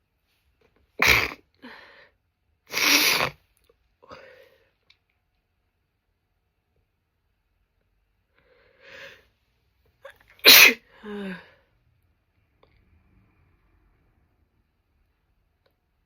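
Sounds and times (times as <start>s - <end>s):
woman sneezing: 1.0s - 1.5s, 2.7s - 3.4s, 10.4s - 11.2s.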